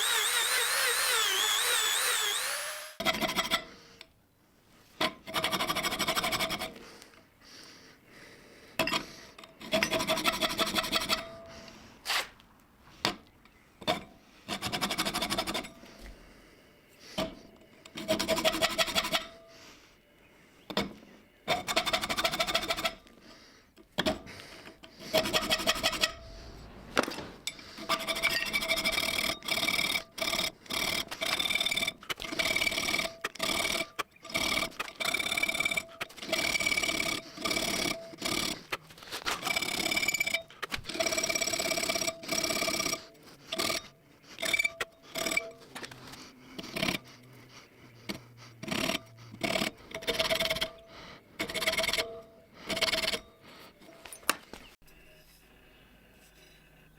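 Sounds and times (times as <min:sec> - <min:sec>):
tool rasping on steel blade: 0:00.0 - 0:03.7, 0:24.9 - 0:26.5, 0:27.5 - 0:45.8.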